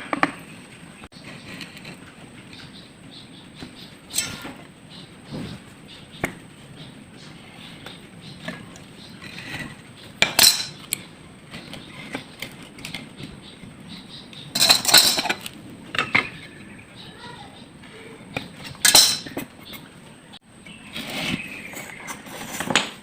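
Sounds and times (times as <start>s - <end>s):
hard objects clattering: 7.6s - 16.8s, 18.3s - 19.9s, 20.7s - 23.0s.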